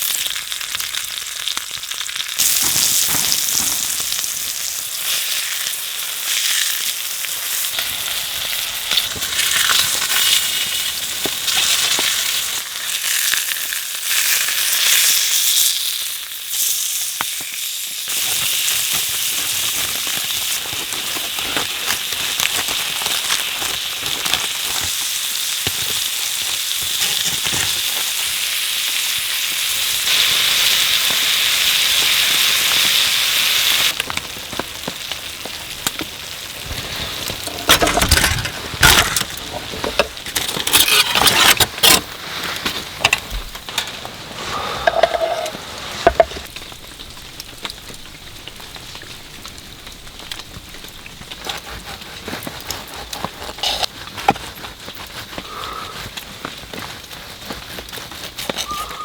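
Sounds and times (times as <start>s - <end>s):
food sizzling in a pan: 0.0s - 39.8s.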